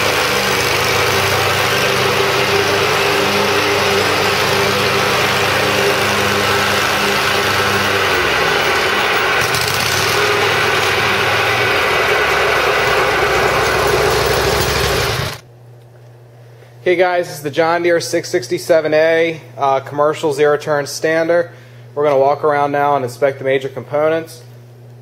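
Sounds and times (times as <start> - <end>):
mower engine running: 0.0 - 15.4.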